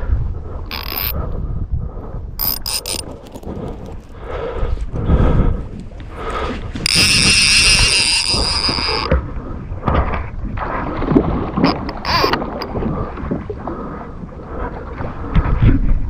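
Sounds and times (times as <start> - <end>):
fishing reel ratchet clicking: 0.7 - 1.2, 2.4 - 4.1, 6.9 - 9.1.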